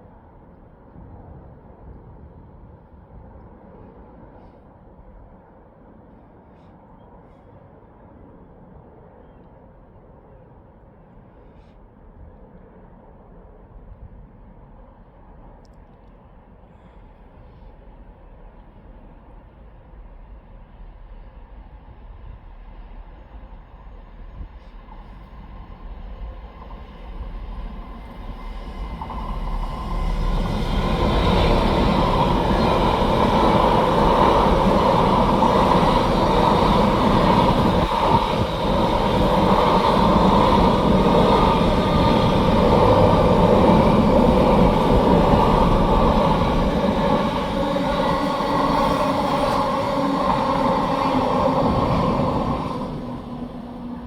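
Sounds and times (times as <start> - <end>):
diesel freight train passing: 17.1 - 54.0.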